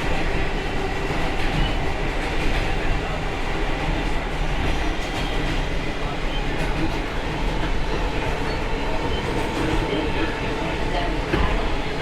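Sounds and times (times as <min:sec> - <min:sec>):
subway car wheels and motors rumbling: 0:00.0 - 0:12.0.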